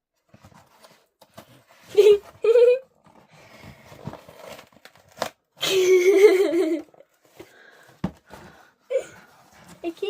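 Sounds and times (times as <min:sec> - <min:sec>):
packaging tearing and crinkling: 0:04.1 - 0:05.5.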